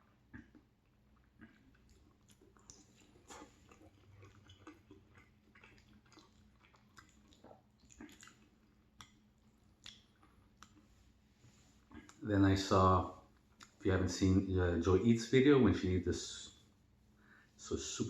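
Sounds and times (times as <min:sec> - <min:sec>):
faint chewing: 0:00.0 - 0:12.4, 0:13.1 - 0:13.9
mouth clicks and smacks: 0:00.1 - 0:11.0, 0:11.8 - 0:12.2, 0:13.3 - 0:13.8.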